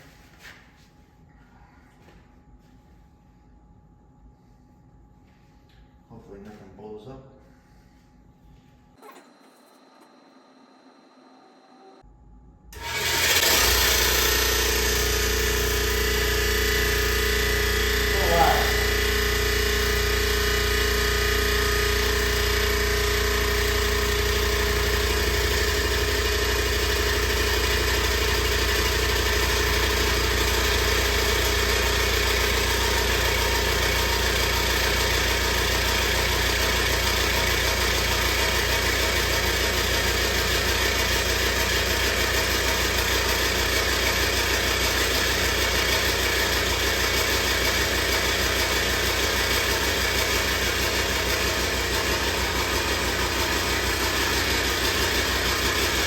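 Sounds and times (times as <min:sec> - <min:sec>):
blower motor and fan running: 0:12.7 - 0:56.0.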